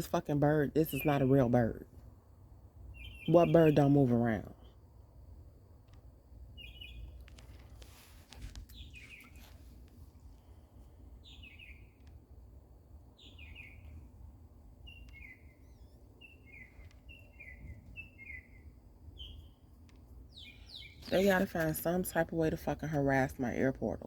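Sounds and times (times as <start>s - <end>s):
mockingbird singing: 0.0s - 1.5s, 3.0s - 4.5s, 6.6s - 7.1s, 11.2s - 12.0s, 13.2s - 13.9s, 14.8s - 19.6s, 20.3s - 22.5s
low background rumble: 0.0s - 24.0s.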